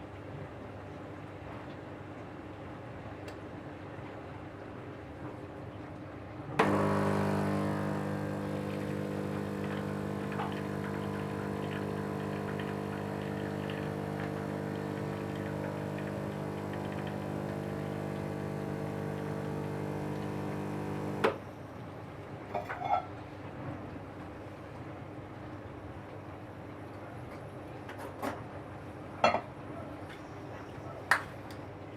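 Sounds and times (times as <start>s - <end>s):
espresso machine pump buzzing: 6.6s - 21.4s.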